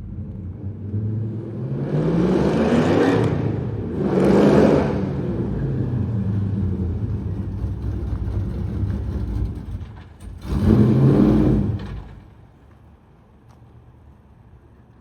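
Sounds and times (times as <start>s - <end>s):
car engine accelerating: 0.0s - 12.3s.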